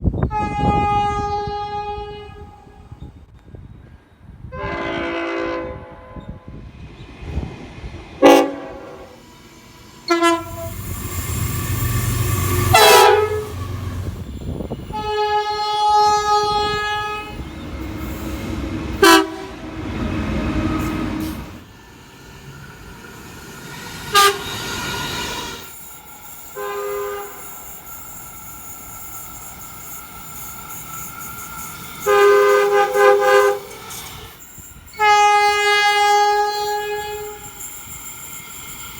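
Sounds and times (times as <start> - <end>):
passing train rumble and wheel clatter: 0.0 - 38.9
train horn blasts: 0.2 - 3.0, 4.5 - 6.5, 8.2 - 9.2, 10.0 - 21.4, 24.1 - 24.6, 26.5 - 27.6, 32.0 - 33.8, 34.9 - 37.6.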